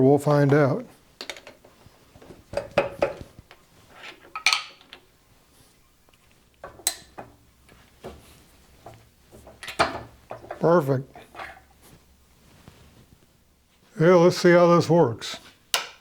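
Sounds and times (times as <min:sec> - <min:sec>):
metal clinks and knocks: 0:08.8 - 0:11.7.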